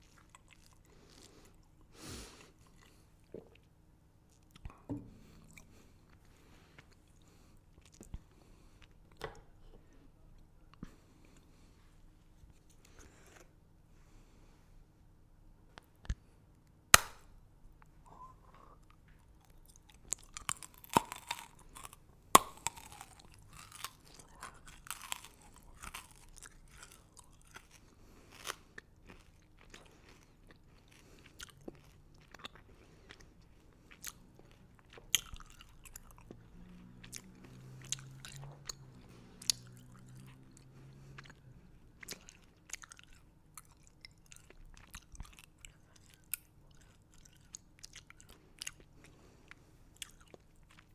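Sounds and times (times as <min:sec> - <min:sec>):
crunchy candy crunching: 0:19.4 - 0:33.3.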